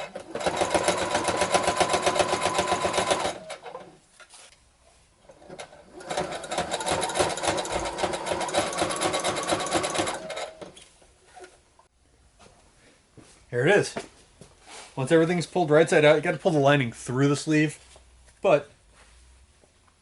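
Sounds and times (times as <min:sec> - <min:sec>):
sewing machine stitching: 0:00.0 - 0:03.9, 0:05.3 - 0:10.8.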